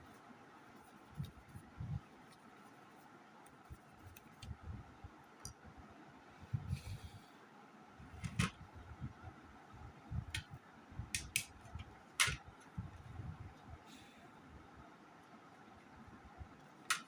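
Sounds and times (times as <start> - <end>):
sharp plastic clicks: 10.3 - 12.5.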